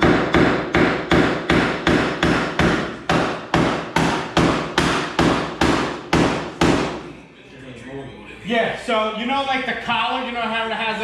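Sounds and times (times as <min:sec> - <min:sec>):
hammer striking metal: 0:00.0 - 0:07.1.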